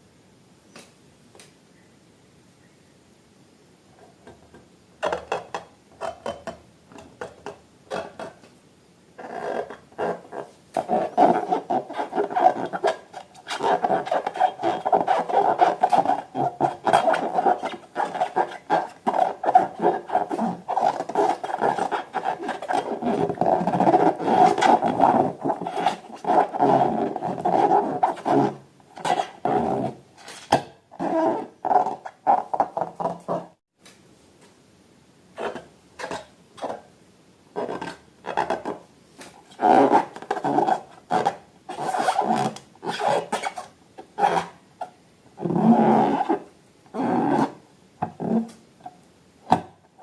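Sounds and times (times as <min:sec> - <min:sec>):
rubber balloons squeaking: 0:09.2 - 0:33.6, 0:37.6 - 0:38.8, 0:39.4 - 0:44.6.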